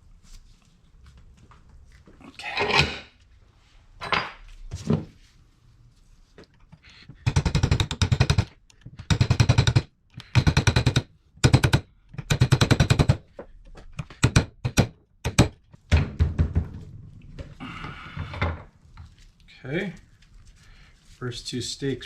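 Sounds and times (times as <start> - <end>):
rapid metal hammering: 7.2 - 13.2, 14.2 - 15.6.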